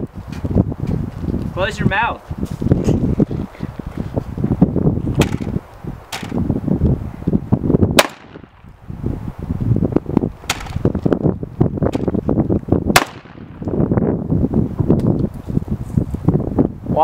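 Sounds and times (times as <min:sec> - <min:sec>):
wind rumble on microphone: 0:00.0 - 0:17.0
shotgun shots: 0:06.1 - 0:06.4, 0:08.0 - 0:08.5, 0:10.5 - 0:10.8, 0:13.0 - 0:13.6.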